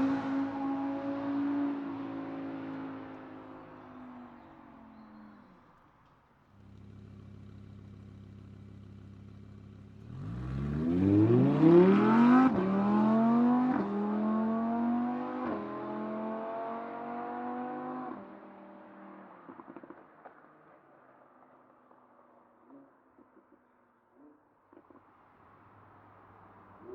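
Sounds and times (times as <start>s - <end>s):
sports car engine revving: 6.6s - 18.1s.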